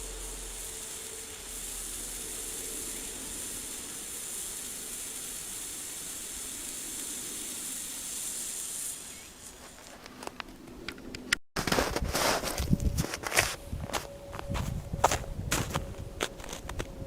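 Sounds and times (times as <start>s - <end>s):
firework fountain hissing: 0.0s - 10.1s.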